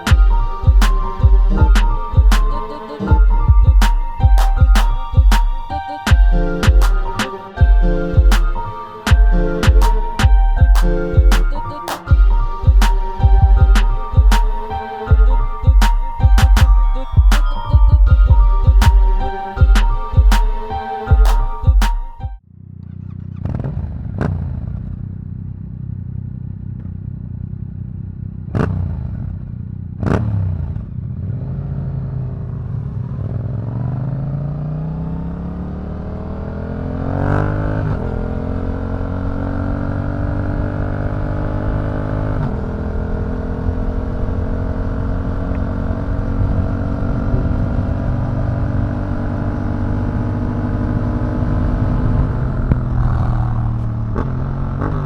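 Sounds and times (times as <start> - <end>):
motorcycle engine accelerating: 22.4 - 55.0.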